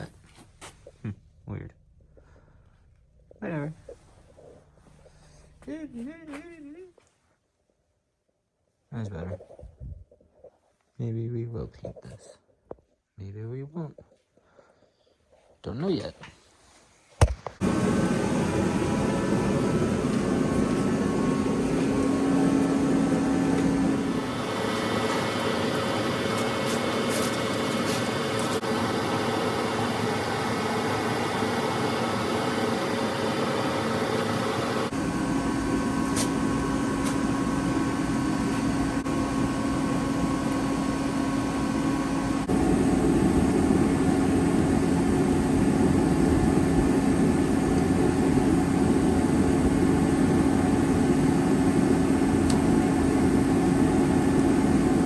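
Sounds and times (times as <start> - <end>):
power sander running: 17.6 - 55.0.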